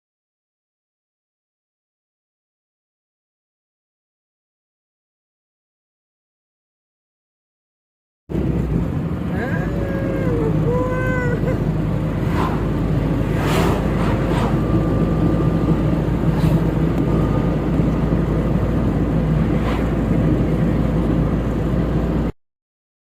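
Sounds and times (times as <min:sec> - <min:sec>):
vehicle rumble: 0:08.3 - 0:22.4.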